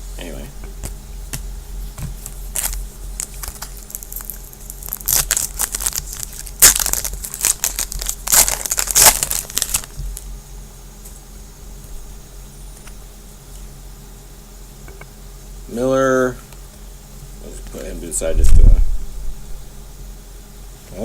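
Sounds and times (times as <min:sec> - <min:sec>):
foil wrapper crinkling and tearing: 0:02.1 - 0:10.3.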